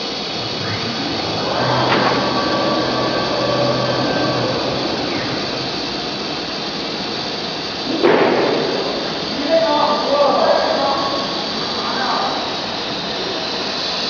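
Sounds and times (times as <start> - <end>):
low hum: 0.2 - 7.8
router cutting wood: 0.4 - 6.6.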